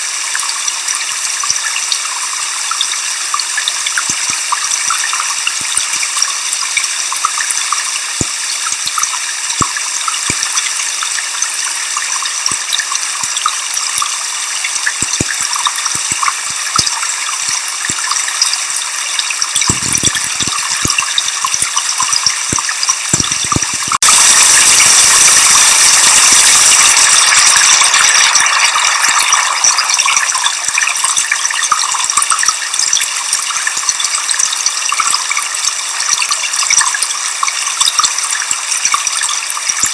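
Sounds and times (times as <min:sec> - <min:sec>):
white noise: 0:23.1 - 0:30.8
waterfall rushing hiss: 0:23.4 - 0:30.3.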